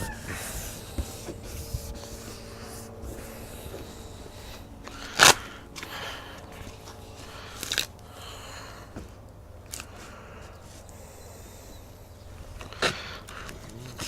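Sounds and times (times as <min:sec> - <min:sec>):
loud tape rasp: 0:00.0 - 0:08.0
tape handling noises: 0:00.0 - 0:08.1, 0:09.0 - 0:11.0, 0:12.4 - 0:14.0.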